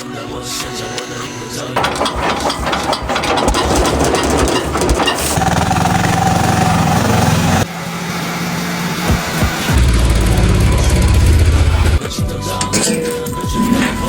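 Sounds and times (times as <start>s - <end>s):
engine running with rattling: 1.8s - 12.0s.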